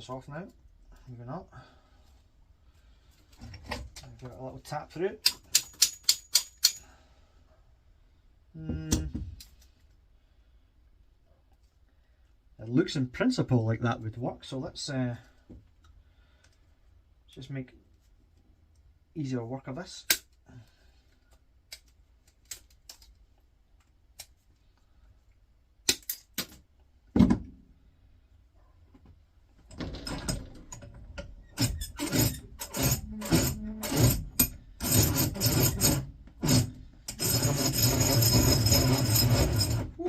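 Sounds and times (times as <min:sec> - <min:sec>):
tools clicking on metal: 0:05.2 - 0:06.9, 0:25.8 - 0:26.6.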